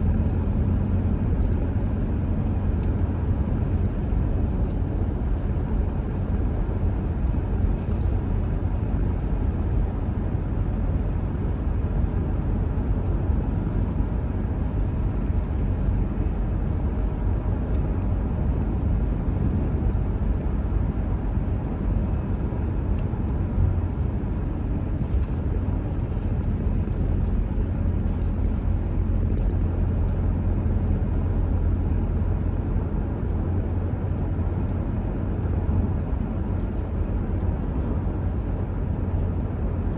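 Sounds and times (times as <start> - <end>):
car road and engine rumble: 0.0 - 39.9.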